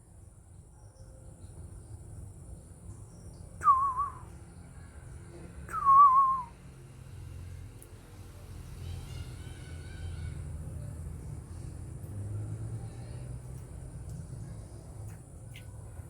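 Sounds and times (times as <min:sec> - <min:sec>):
bird fluty whistles: 0:03.6 - 0:04.3, 0:05.7 - 0:06.6.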